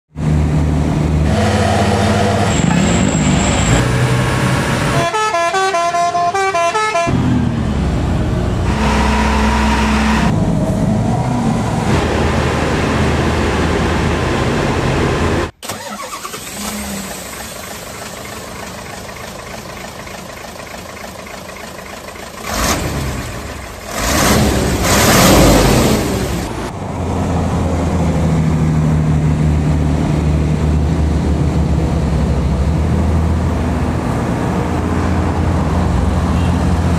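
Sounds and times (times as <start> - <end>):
heavy diesel trucks running: 0.2 - 36.9
musical multi-tone horn: 5.0 - 7.2, 8.6 - 10.3.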